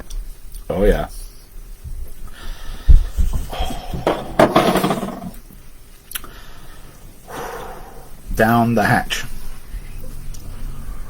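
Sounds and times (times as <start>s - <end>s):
man exhaling breathily: 7.3s - 8.1s.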